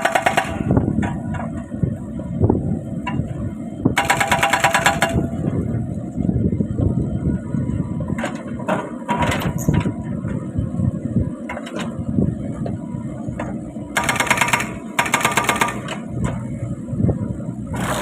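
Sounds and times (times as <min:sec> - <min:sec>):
hydraulic breaker hammering: 0:00.0 - 0:00.8, 0:04.0 - 0:05.3, 0:14.0 - 0:16.0
diesel engine running: 0:00.0 - 0:18.0.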